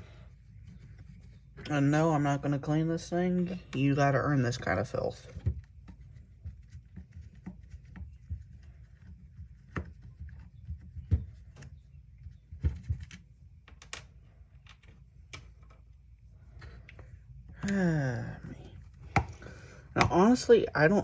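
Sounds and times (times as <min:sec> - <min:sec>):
plastic housing being handled: 0:18.7 - 0:20.6.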